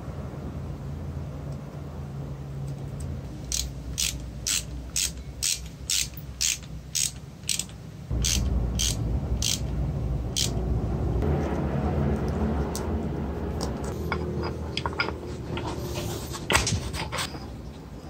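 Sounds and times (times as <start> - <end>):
regular mechanical clicking: 2.6 - 10.7
low rumble: 8.1 - 16.1.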